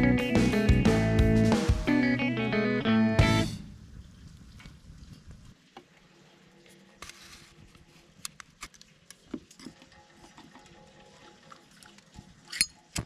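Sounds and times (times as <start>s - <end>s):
guitar music: 0.0s - 3.7s.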